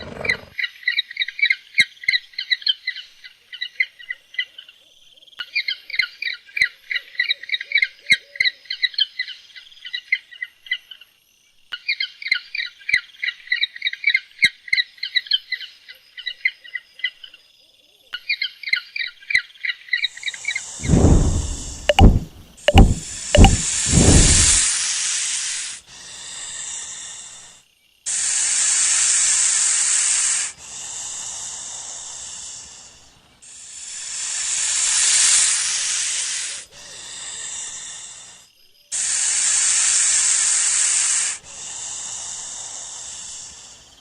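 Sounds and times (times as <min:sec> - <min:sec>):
animal hissing: 0:00.0 - 0:00.5, 0:20.4 - 0:27.5, 0:28.1 - 0:44.0.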